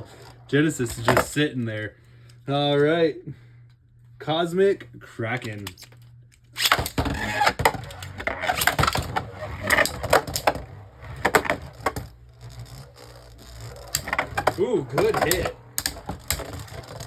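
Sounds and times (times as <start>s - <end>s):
whirr of spinning tops: 0.0s - 1.4s, 6.5s - 17.0s
spinning tops clattering together: 6.6s - 17.0s.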